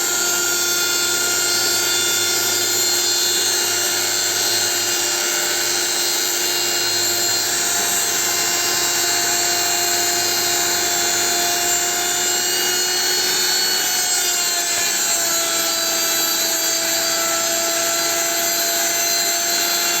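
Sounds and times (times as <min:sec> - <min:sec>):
router spindle high whine: 0:00.0 - 0:20.0.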